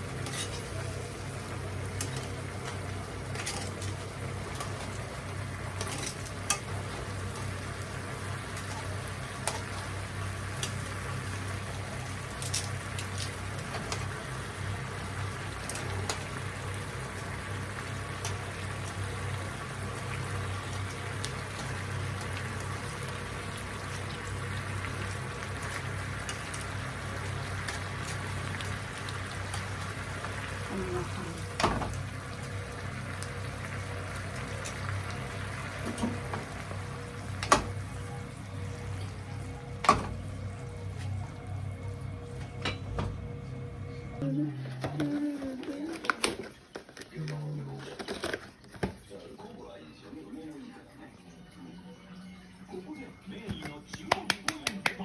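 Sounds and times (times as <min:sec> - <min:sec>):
food bubbling and frying: 0:00.0 - 0:42.4
low hum: 0:16.8 - 0:45.3.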